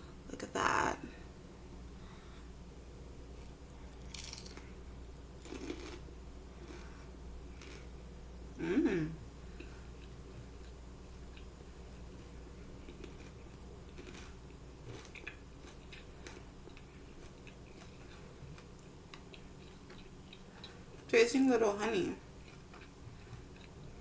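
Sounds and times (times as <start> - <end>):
person chewing crunchy food: 3.3 - 4.7, 5.3 - 8.0, 9.5 - 21.1, 22.2 - 24.0
person humming: 8.6 - 9.2.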